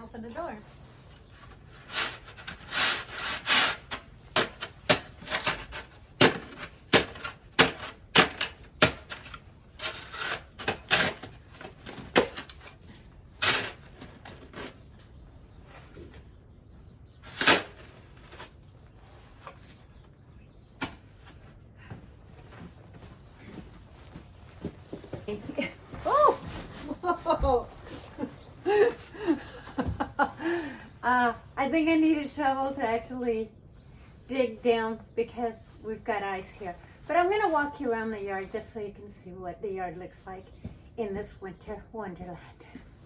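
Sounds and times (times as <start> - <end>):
snow crunching underfoot: 24.6 - 29.4.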